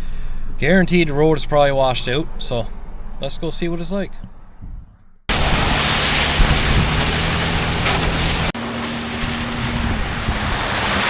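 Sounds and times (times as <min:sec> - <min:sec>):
off-road vehicle engine running: 0:00.0 - 0:11.0
wind noise on microphone: 0:04.6 - 0:11.0.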